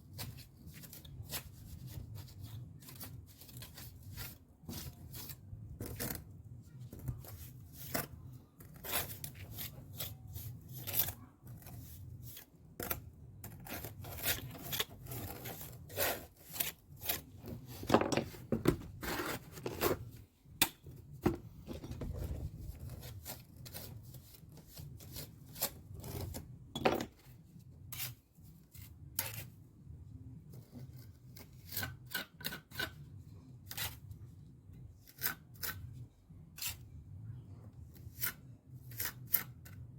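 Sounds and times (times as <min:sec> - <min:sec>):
trowel scraping mortar: 0:07.1 - 0:18.2, 0:38.0 - 0:39.8.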